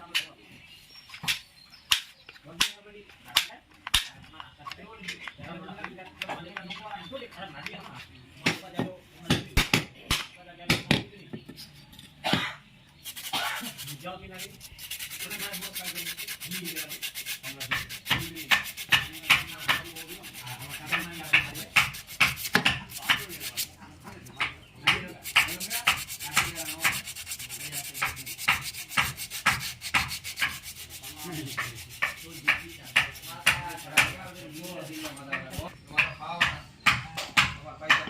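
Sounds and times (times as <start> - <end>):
hand sanding with sandpaper: 13.0 - 24.2, 24.8 - 35.8.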